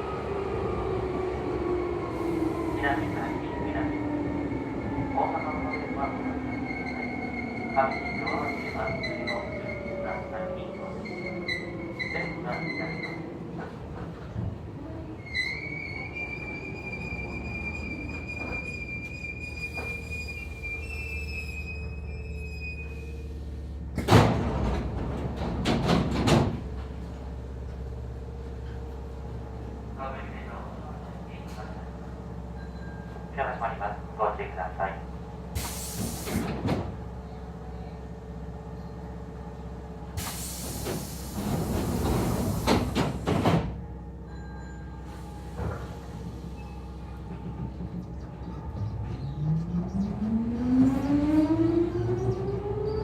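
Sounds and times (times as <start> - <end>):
train car humming: 0.0 - 53.0
sliding doors banging: 24.0 - 27.0
pneumatic door air hiss: 35.5 - 36.6, 40.2 - 43.4.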